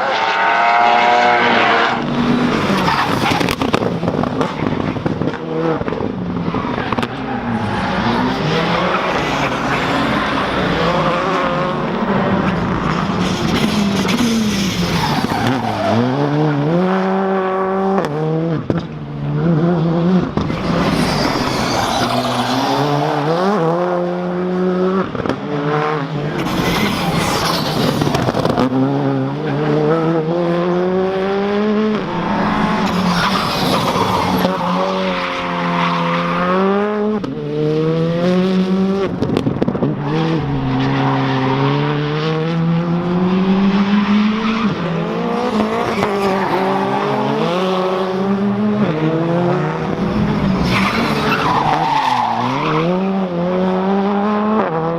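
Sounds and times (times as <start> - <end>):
rally car engine revving: 0.0 - 54.9
bursts of rushing noise: 0.7 - 16.2, 31.9 - 36.6.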